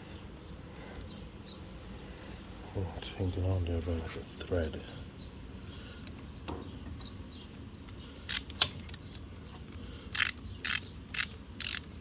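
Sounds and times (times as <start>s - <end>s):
ratchet wrench clicking: 8.3s - 9.0s, 10.1s - 11.9s.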